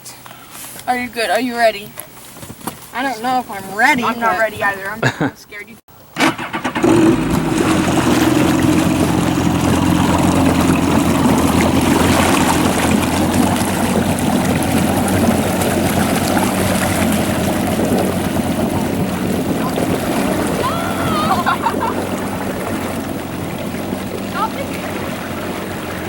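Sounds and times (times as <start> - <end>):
jet ski engine running: 0.0 - 5.6, 6.2 - 26.0
wind: 0.0 - 26.0
rushing water: 6.3 - 26.0.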